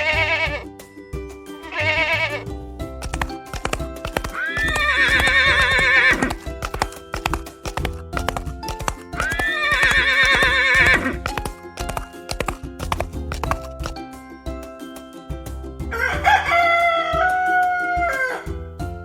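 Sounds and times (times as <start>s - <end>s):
horse whinnying: 0.0s - 0.7s, 1.6s - 2.4s, 4.2s - 6.9s, 9.1s - 11.4s
background music: 0.0s - 19.0s
hoof clip-clops: 1.6s - 14.1s.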